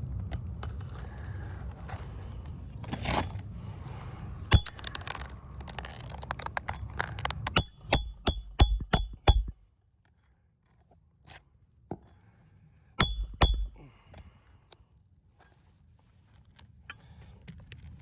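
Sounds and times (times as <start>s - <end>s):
hammer striking roofing nails: 4.5s - 5.1s, 7.5s - 9.6s, 13.0s - 13.9s.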